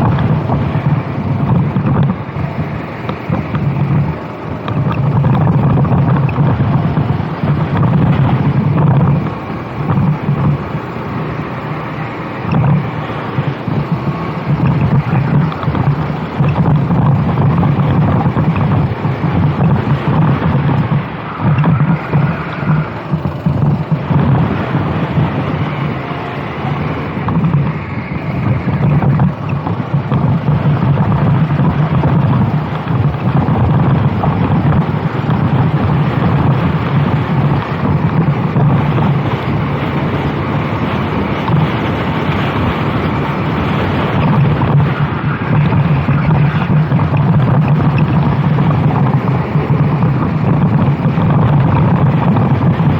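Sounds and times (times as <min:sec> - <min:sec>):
racing kart engine at speed: 0:00.0 - 0:52.9
wind buffeting microphone: 0:00.0 - 0:52.9.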